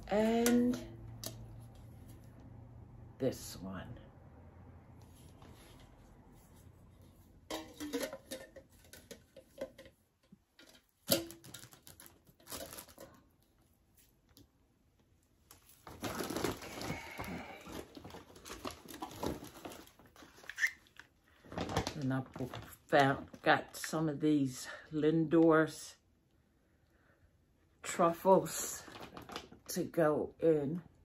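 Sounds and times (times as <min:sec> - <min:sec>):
plastic bag rustling: 0:11.3 - 0:14.2, 0:15.4 - 0:23.4, 0:28.8 - 0:29.8.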